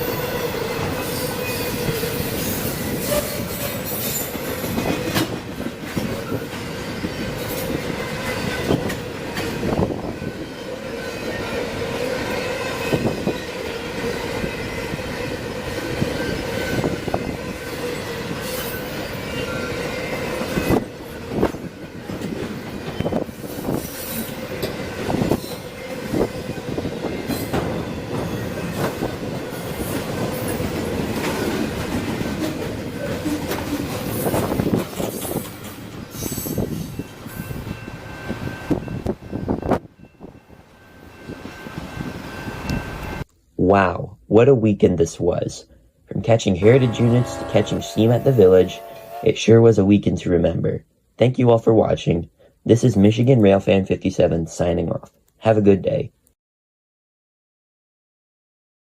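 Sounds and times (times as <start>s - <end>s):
freight train wheels squealing: 0.0s - 5.3s, 6.0s - 21.2s, 22.8s - 30.6s, 33.0s - 43.2s, 46.6s - 49.4s.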